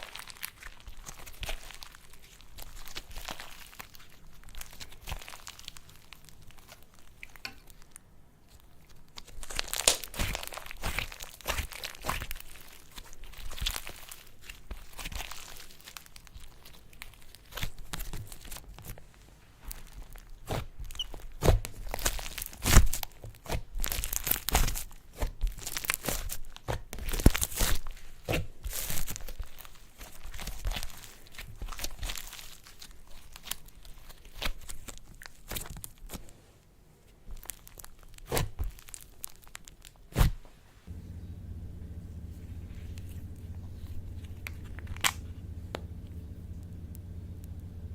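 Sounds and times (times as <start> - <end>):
slime crackling and popping: 0.0 - 19.0, 19.6 - 36.3, 37.3 - 40.4, 42.6 - 47.8.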